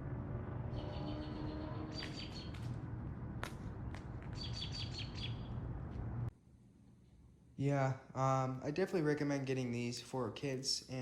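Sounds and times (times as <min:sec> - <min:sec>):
steady low rumble: 0:00.0 - 0:06.4
small bird chirping: 0:04.4 - 0:05.6.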